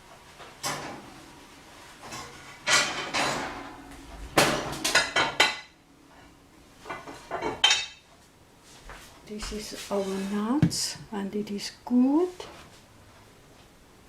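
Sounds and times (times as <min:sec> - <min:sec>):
pans and utensils clattering: 0:02.0 - 0:03.8, 0:04.4 - 0:05.7, 0:06.8 - 0:08.0.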